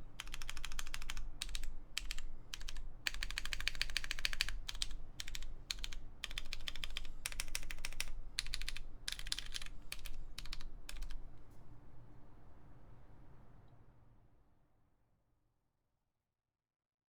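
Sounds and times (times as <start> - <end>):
mechanical keyboard key clacks: 0.2 - 11.2.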